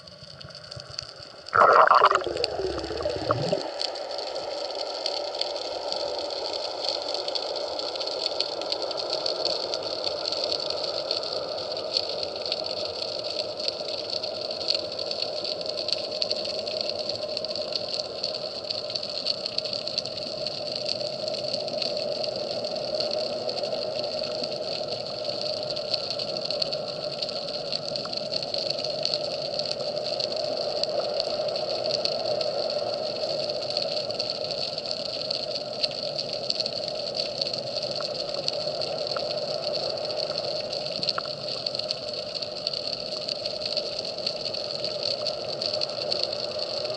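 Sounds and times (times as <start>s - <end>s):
underwater drone: 0.0s - 7.0s
fine crackling clicks: 33.2s - 46.9s.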